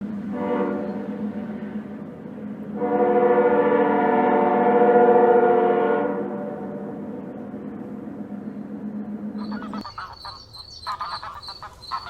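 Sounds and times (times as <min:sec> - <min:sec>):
train horn blast: 0:00.3 - 0:01.8, 0:02.7 - 0:07.0.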